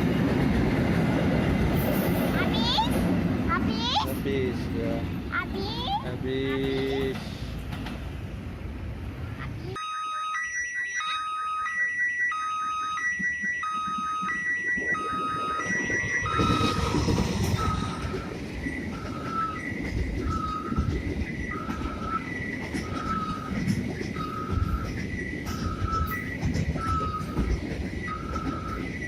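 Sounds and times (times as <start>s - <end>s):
two-tone crossing alarm: 9.7s - 29.0s.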